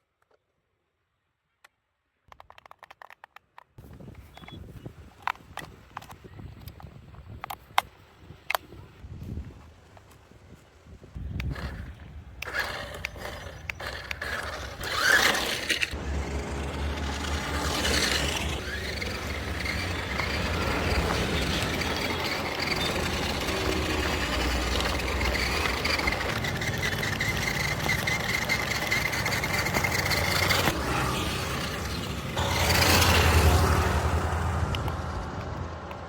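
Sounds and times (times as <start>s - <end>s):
toy car motor whirring: 11.2s - 35.2s.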